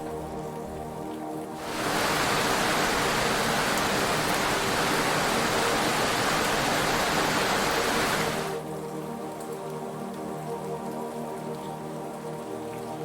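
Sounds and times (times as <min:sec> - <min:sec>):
heavy rain: 0:01.6 - 0:08.8.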